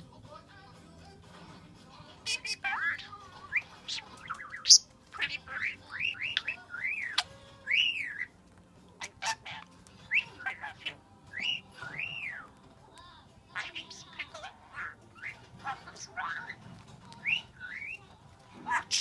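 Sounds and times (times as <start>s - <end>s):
sharp high bird chirps: 2.3s - 8.3s
birds whistling: 2.3s - 8.4s, 9.0s - 12.5s, 13.6s - 19.0s.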